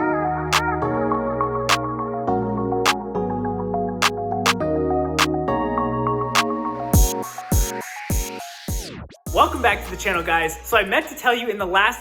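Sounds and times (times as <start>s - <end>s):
synthesizer chords: 0.0s - 11.0s
percussion hit: 7.0s - 9.9s.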